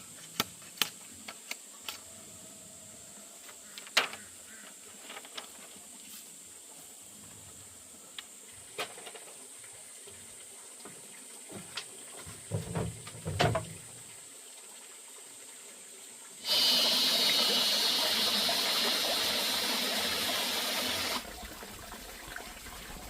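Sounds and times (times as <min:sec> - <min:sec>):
high-pitched hiss: 0:00.0 - 0:10.7, 0:16.3 - 0:21.2.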